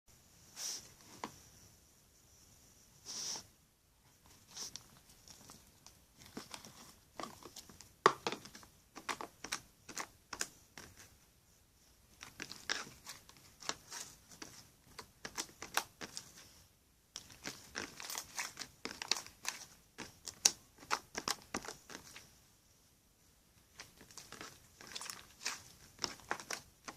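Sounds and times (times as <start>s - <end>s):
slime squishing with sticky pops: 12.2s - 16.2s, 17.1s - 22.2s, 23.8s - 26.9s.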